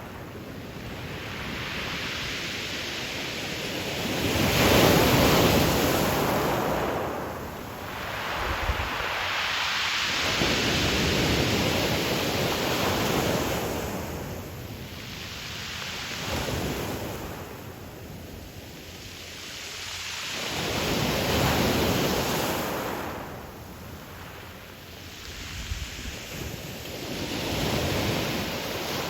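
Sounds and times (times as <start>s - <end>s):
surf washing up pebble beach: 0.0s - 29.0s.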